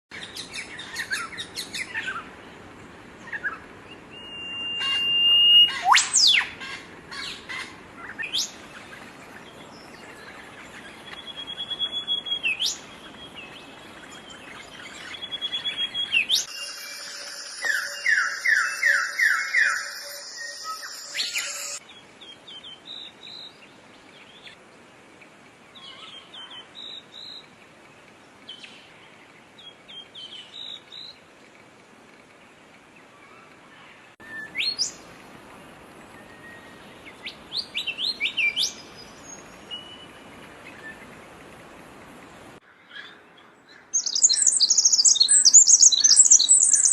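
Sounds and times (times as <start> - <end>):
songbirds chirping: 0.1 - 46.9.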